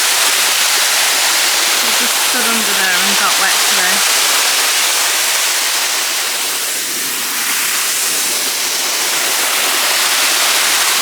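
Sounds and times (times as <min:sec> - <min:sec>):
waterfall rushing: 0:01.8 - 0:04.8.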